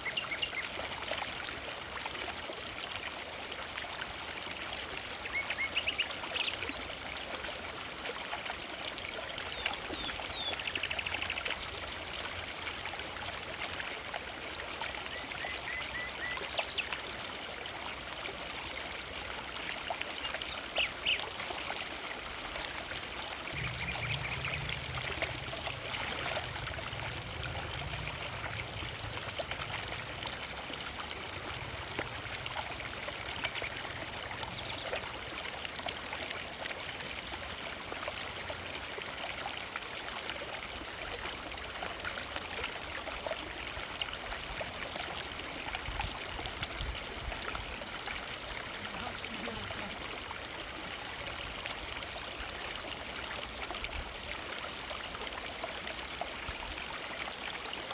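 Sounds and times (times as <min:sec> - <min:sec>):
river flowing: 0:00.0 - 0:57.9
bird chirps and trills: 0:20.8 - 0:21.9, 0:23.5 - 0:25.7
low rumble: 0:22.4 - 0:32.7.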